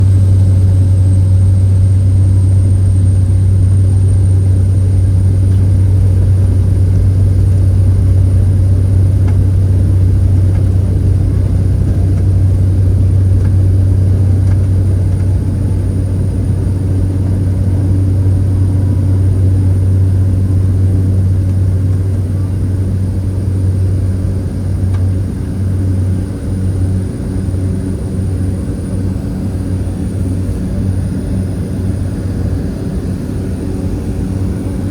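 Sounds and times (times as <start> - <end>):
propeller aircraft engine drone: 0.0 - 34.9.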